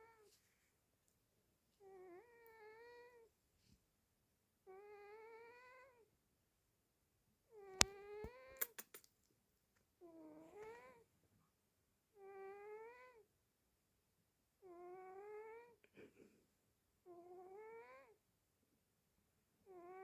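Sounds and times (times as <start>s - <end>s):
sharp clicks: 7.8s - 9.1s.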